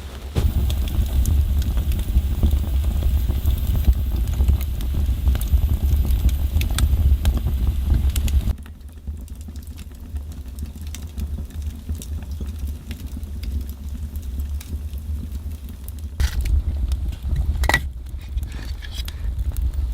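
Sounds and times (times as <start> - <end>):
fire crackling: 0.0 - 19.9
low rumble: 0.4 - 8.6, 16.1 - 19.9.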